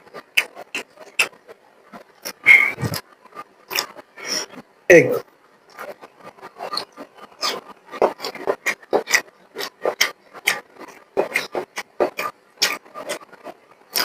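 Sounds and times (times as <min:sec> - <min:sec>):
wet chewing and lip-smacking: 0:06.6 - 0:14.0.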